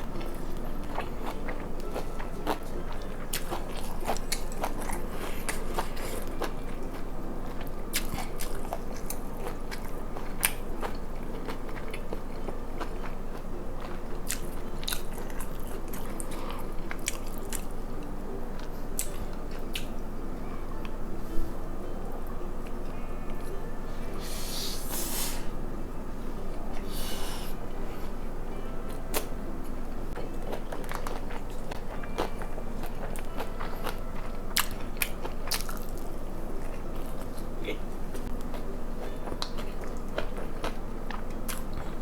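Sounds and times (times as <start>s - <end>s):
person chewing and crunching: 0.0s - 20.0s, 28.9s - 29.3s, 30.2s - 42.0s.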